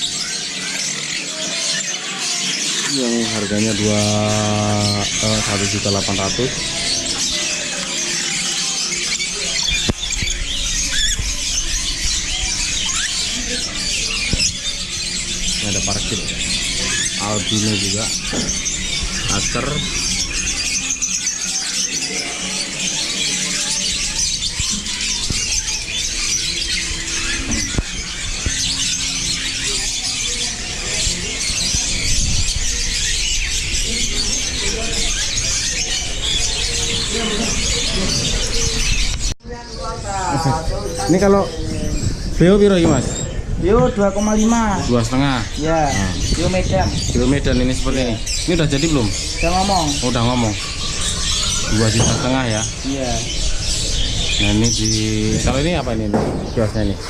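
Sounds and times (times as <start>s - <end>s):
parrots screeching and squawking: 0.0s - 57.0s
sharp knock: 56.1s - 56.8s.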